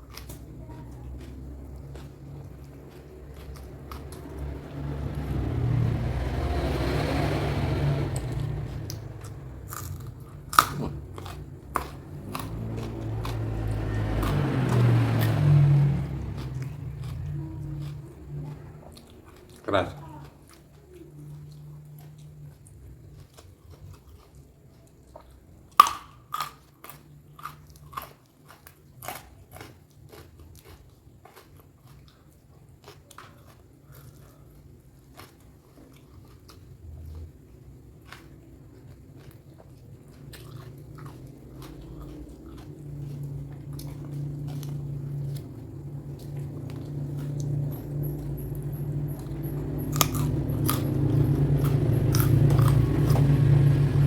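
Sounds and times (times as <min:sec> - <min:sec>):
person chewing crunchy food: 0:00.0 - 0:06.9, 0:08.1 - 0:54.0
low rumble: 0:40.8 - 0:54.0.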